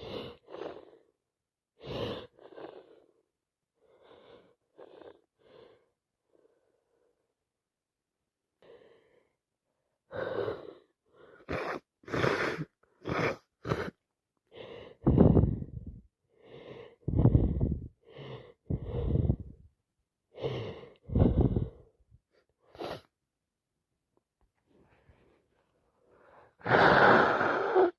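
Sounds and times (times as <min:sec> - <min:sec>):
gasping breath: 0:00.0 - 0:01.2, 0:01.8 - 0:03.2, 0:10.1 - 0:19.7, 0:20.3 - 0:22.0, 0:24.7 - 0:27.9
person sneezing: 0:11.4 - 0:14.0, 0:26.6 - 0:27.9.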